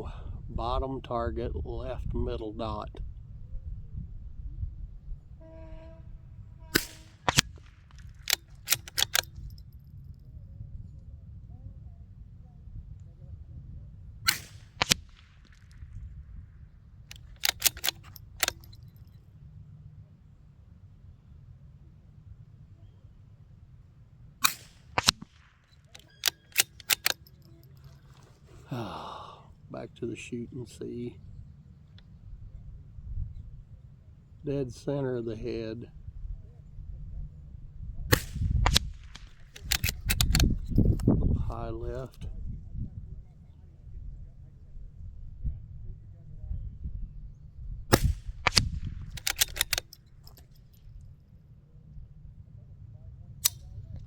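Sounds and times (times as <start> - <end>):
small-calibre gunshots: 6.7 - 9.6, 14.3 - 16.1, 17.1 - 18.8, 24.4 - 27.8, 38.1 - 41.0, 47.9 - 50.6
small clicks: 6.8 - 9.7, 17.1 - 19.2, 24.4 - 28.4, 38.1 - 41.2, 47.9 - 50.9.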